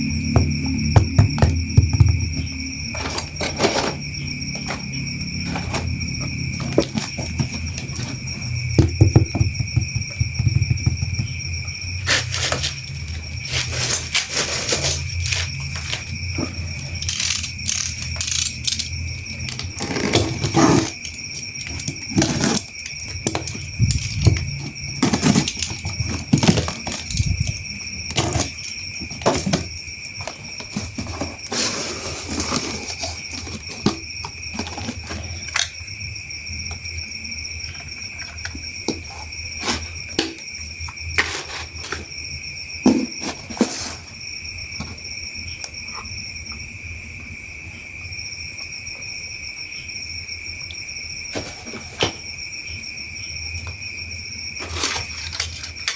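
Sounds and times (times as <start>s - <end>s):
high-pitched whine: 0.0s - 47.8s
plastic toy parts rattling: 12.1s - 16.2s, 16.8s - 27.5s.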